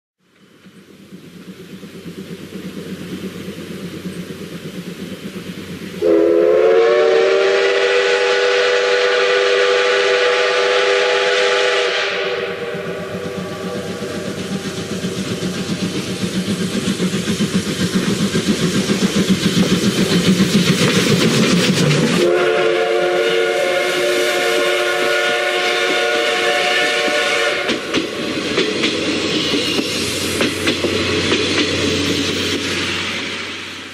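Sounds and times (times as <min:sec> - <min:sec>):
train clicks: 0:00.3 - 0:08.2, 0:11.6 - 0:33.9
locomotive rumble: 0:00.3 - 0:33.9
steam locomotive chime whistle: 0:06.0 - 0:15.0, 0:22.2 - 0:27.9.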